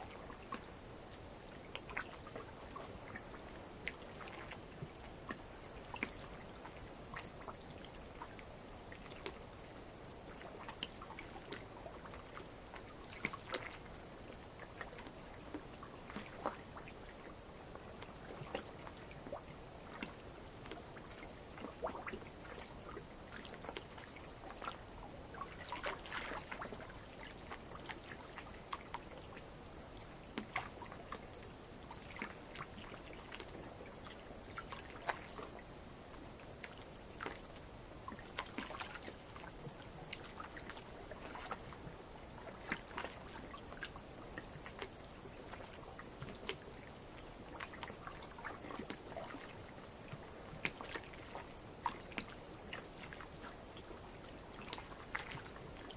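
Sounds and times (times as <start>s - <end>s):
night insects chorus: 0.0s - 55.9s
small splashes and clicks: 10.4s - 13.8s, 31.9s - 55.9s.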